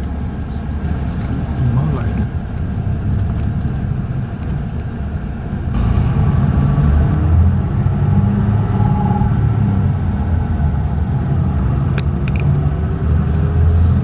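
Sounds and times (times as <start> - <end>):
vehicle engine rumbling: 0.0 - 14.0.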